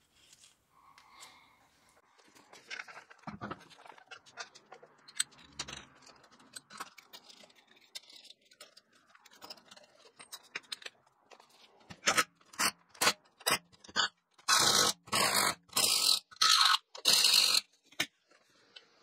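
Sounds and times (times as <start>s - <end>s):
metal tools clinking and scraping: 2.3s - 12.2s.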